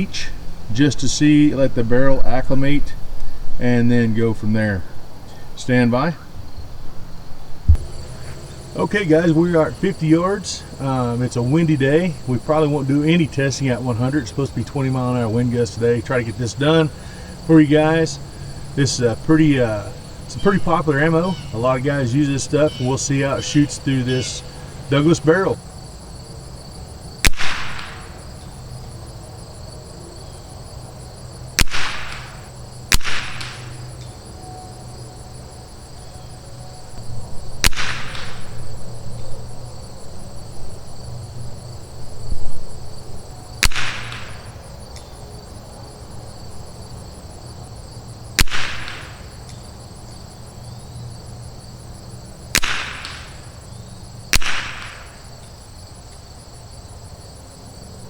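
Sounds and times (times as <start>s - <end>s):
crickets trilling: 0.0s - 58.0s
rifle shots: 27.2s - 28.2s, 31.6s - 33.8s, 37.6s - 38.6s, 43.6s - 44.5s, 48.4s - 49.2s, 52.5s - 53.5s, 54.3s - 55.3s.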